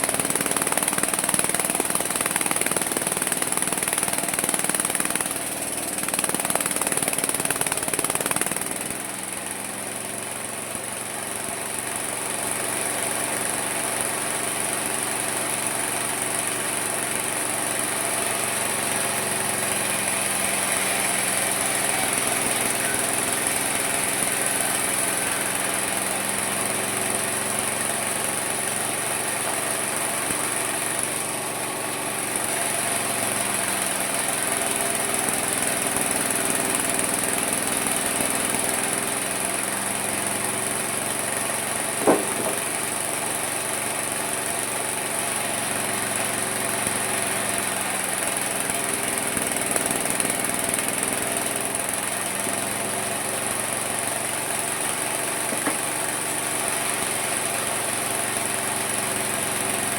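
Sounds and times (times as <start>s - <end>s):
sawmill sawing wood: 0.0s - 59.9s
sharp knock: 42.0s - 42.6s.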